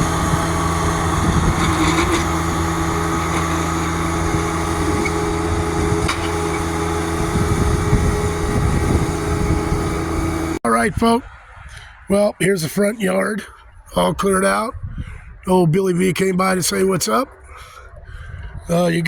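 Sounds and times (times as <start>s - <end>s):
engine running steadily: 0.0s - 10.6s.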